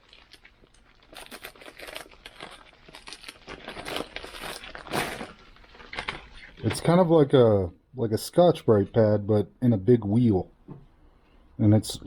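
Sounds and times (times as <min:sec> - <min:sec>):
packaging crackle: 0:00.0 - 0:06.9
packaging crinkling and rustling: 0:00.0 - 0:07.2.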